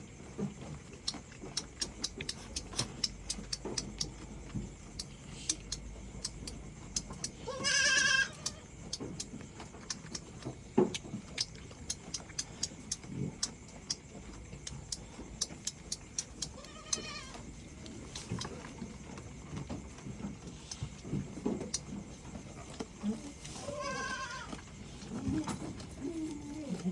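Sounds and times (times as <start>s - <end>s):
small irregular clicks and smacks: 0.1s - 26.9s
goat bleating: 7.4s - 8.7s, 16.4s - 17.5s, 23.6s - 24.6s.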